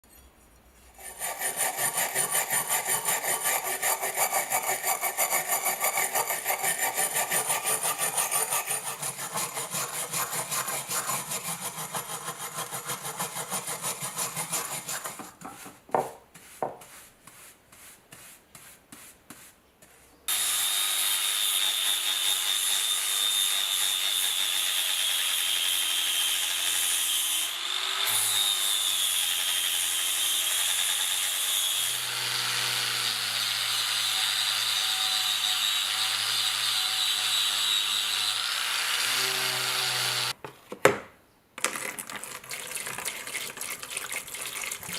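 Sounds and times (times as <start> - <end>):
rasping strokes on a knife: 0.9 - 20.2
power tool whining: 31.9 - 40.4.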